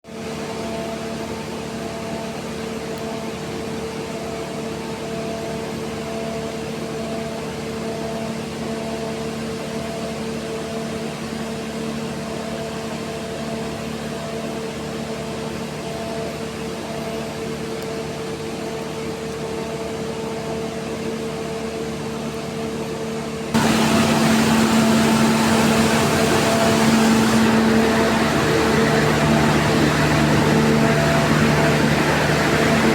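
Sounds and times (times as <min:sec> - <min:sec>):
machinery hum: 0:23.6 - 0:32.9.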